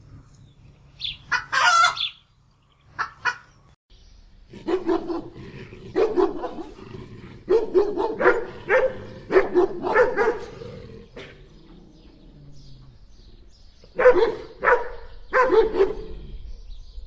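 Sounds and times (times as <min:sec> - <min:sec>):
dog barking: 0:04.6 - 0:06.8, 0:07.5 - 0:10.5, 0:13.9 - 0:16.1.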